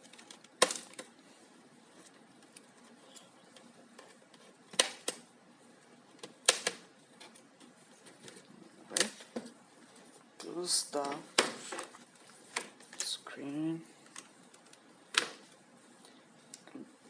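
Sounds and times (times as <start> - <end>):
plastic laptop casing clicks: 0.1 - 1.1, 4.7 - 5.3, 6.2 - 6.8.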